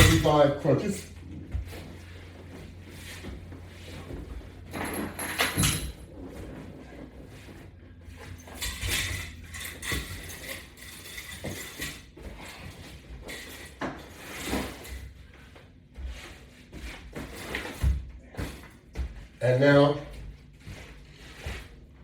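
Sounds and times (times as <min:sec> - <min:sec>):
straps rubbing and clinking: 0:08.3 - 0:15.1.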